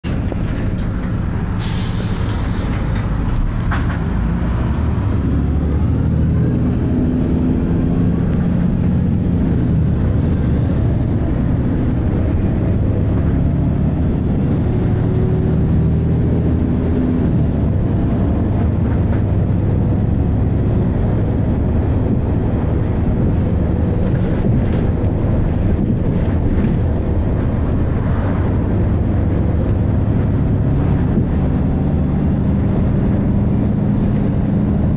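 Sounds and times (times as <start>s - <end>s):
bus engine running: 0.0s - 34.9s
air hiss: 1.6s - 3.0s.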